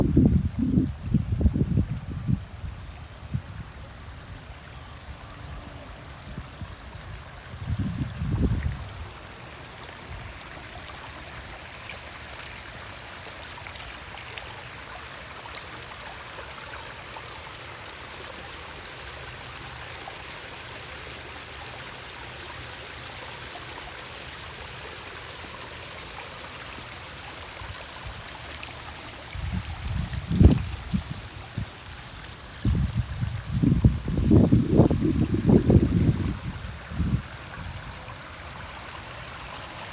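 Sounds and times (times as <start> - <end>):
garden waterfall trickling: 0.0 - 39.9.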